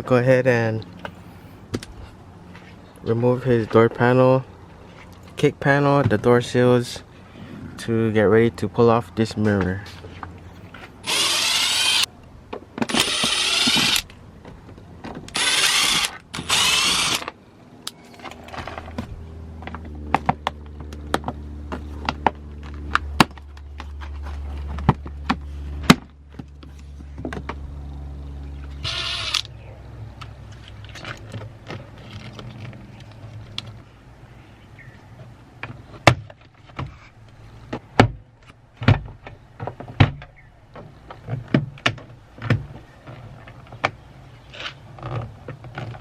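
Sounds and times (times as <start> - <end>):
cordless power drill: 11.0 - 12.1, 12.8 - 14.1, 15.3 - 17.3, 28.8 - 29.5.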